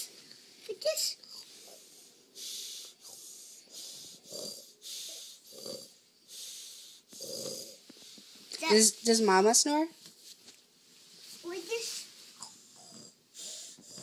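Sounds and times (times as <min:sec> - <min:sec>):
toddler imitating snoring: 0:03.8 - 0:06.0, 0:06.9 - 0:07.8, 0:12.4 - 0:14.0.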